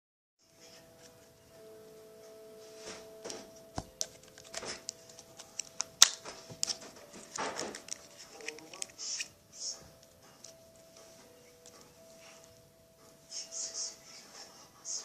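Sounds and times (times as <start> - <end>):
sharp clicks and crackles: 3.8 - 9.3.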